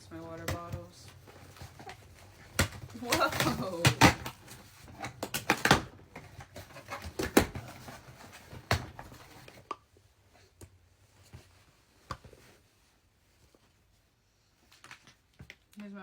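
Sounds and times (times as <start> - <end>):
objects being handled knocking: 0.2 - 9.6.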